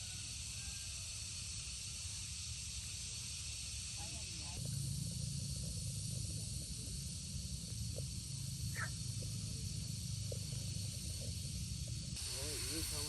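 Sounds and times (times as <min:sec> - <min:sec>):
steady high hiss: 0:00.0 - 0:13.0
faint chirps: 0:03.2 - 0:13.0.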